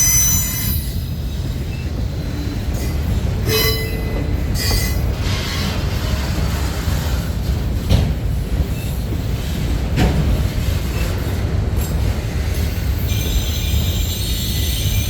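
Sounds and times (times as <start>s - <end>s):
high wheel squeal: 0.0s - 6.2s, 13.0s - 15.0s
freight train rumbling past: 0.0s - 15.0s.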